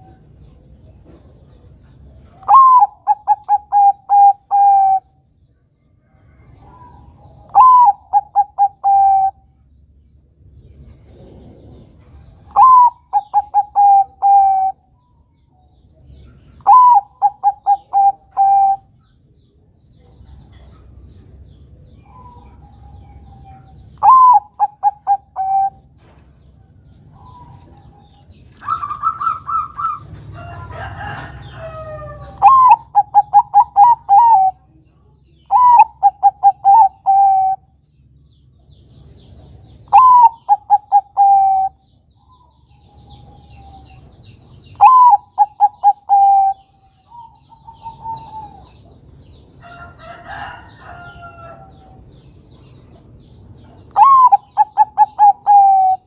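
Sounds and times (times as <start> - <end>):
dove cooing: 2.3 - 5.1, 6.6 - 9.5, 11.2 - 14.8, 16.6 - 18.9, 22.0 - 26.1, 27.1 - 34.7, 35.5 - 37.7, 39.9 - 41.8, 44.7 - 48.8, 54.0 - 56.0.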